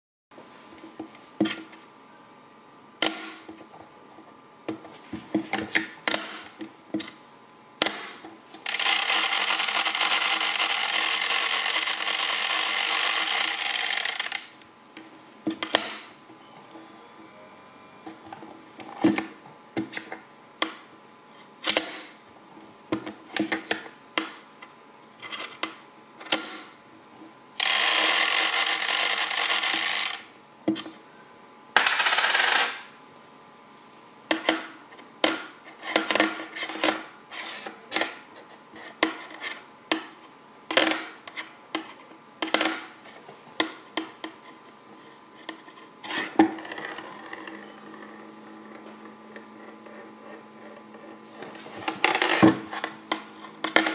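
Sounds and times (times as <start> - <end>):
coin rattling on metal plate: 8.7 - 14.5, 27.6 - 30.2, 31.8 - 32.8.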